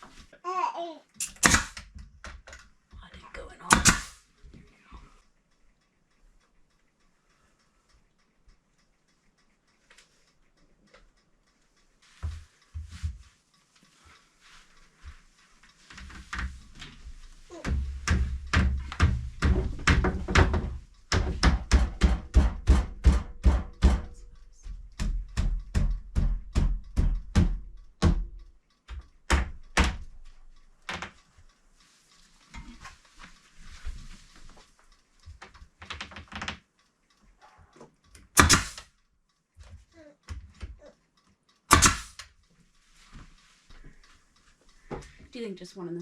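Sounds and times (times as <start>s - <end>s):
hammer tapping nails into wood: 1.2s - 2.6s, 3.7s - 4.2s, 17.6s - 30.1s, 38.3s - 38.9s, 41.7s - 42.3s.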